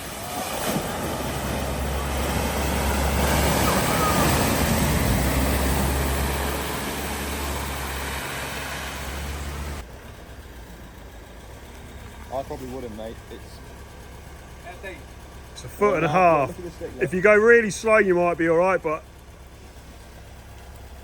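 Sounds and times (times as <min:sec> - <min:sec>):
motor vehicle passing close: 0:00.0 - 0:14.9.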